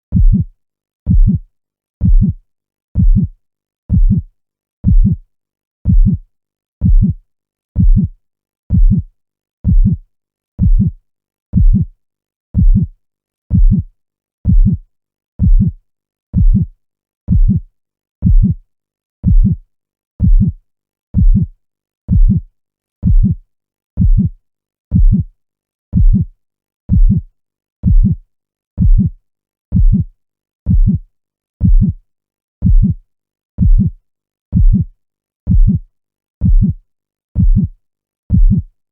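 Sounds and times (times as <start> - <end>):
heartbeat thumping: 0.1 - 0.5, 1.1 - 1.4, 2.0 - 2.4, 3.0 - 3.3, 3.9 - 5.2, 5.8 - 6.2, 6.8 - 7.2, 7.8 - 8.1, 8.7 - 9.0, 9.7 - 10.0, 10.6 - 11.0, 11.6 - 11.9, 12.6 - 12.9, 13.5 - 13.8, 14.5 - 14.8, 15.4 - 15.8, 16.4 - 16.7, 17.3 - 17.6, 18.2 - 18.6, 19.2 - 19.6, 20.2 - 20.6, 21.2 - 21.5, 22.1 - 22.4, 23.0 - 23.4, 24.0 - 24.3, 24.9 - 25.3, 26.0 - 26.3, 26.9 - 27.2, 27.8 - 28.2, 28.8 - 29.1, 29.7 - 30.1, 30.7 - 31.0, 31.6 - 32.0, 32.6 - 33.0, 33.6 - 33.9, 34.5 - 34.9, 35.5 - 35.8, 36.4 - 36.8, 37.4 - 37.7, 38.3 - 38.6.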